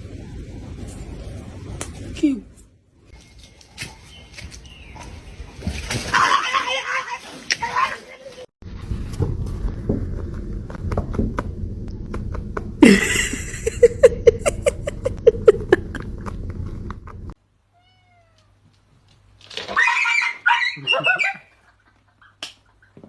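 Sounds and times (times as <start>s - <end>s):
low rumble: 8.6s - 17.4s.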